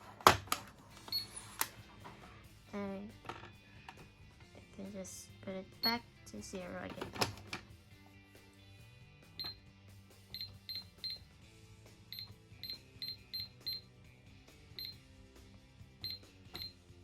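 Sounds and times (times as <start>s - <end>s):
high-pitched keypad beeps: 10.4s - 11.2s, 12.1s - 13.8s, 14.8s - 15.0s.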